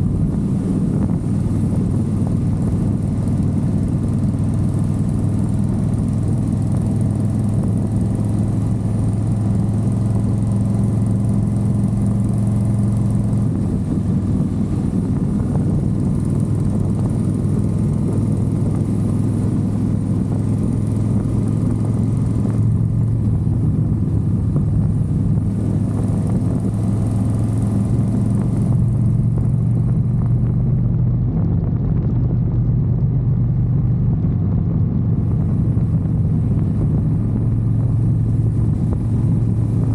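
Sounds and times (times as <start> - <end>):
wind noise rushing: 0.0 - 4.5, 13.2 - 39.9
motorcycle engine running: 0.0 - 39.9.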